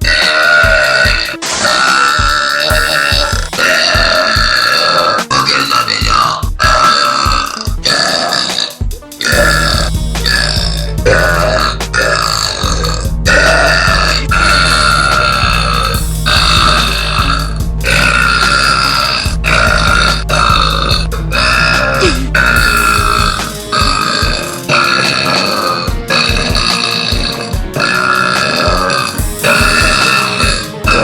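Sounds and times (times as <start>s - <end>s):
girl burping: 10.5s - 25.5s.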